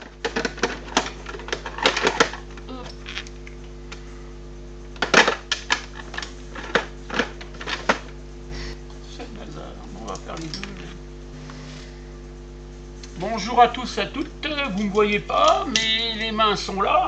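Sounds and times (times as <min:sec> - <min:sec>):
small objects clattering on workbench: 0:00.0 - 0:02.6
steady electrical hum: 0:00.0 - 0:17.0.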